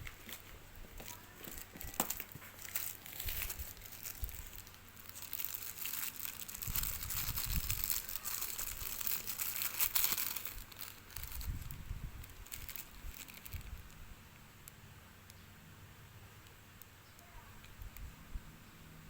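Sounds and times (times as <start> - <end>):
packaging crinkling: 0.0 - 14.0.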